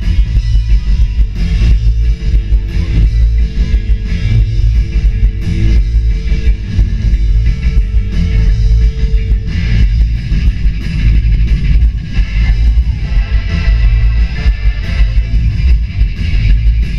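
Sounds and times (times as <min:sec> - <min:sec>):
electric guitar: 0:00.0 - 0:16.9
live rock band: 0:00.0 - 0:16.9.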